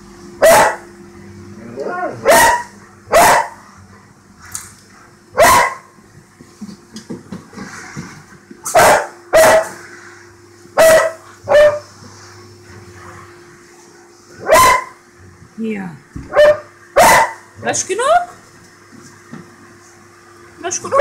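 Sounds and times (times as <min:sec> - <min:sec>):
dog barking: 0:00.4 - 0:00.9, 0:02.2 - 0:03.6, 0:05.4 - 0:05.9, 0:08.7 - 0:09.8, 0:10.8 - 0:11.9, 0:14.4 - 0:15.0, 0:16.3 - 0:17.5.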